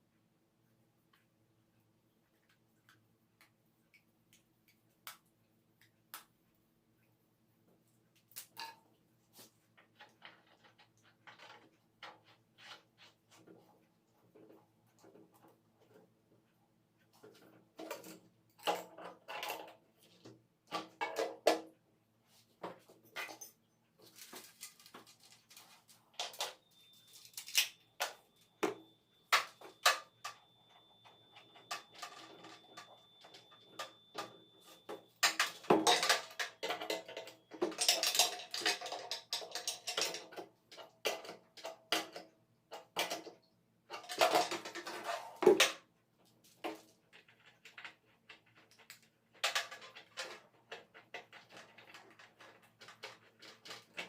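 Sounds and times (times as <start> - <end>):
tools clinking and scraping: 8.4 - 13.5, 22.6 - 45.8
faint thin steady whine: 21.2 - 40.2.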